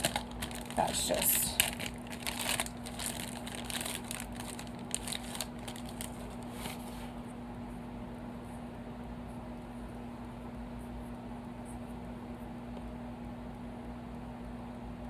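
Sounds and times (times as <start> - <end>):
packaging crinkling: 0.0 - 6.9
faint steady hum: 0.0 - 15.0.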